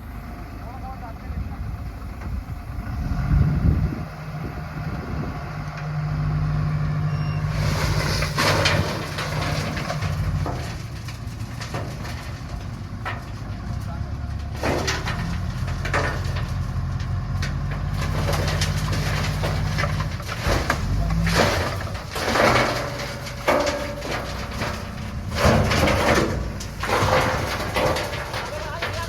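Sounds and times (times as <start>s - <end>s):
engine surges and clatter: 0.0s - 29.0s
heavy diesel engine running: 0.0s - 29.0s.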